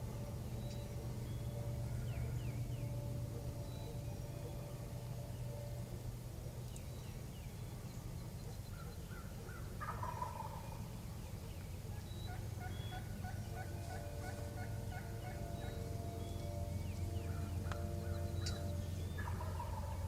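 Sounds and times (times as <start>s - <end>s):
steady low rumble: 0.0s - 20.0s
turkey gobbling: 8.5s - 16.4s, 17.2s - 20.0s.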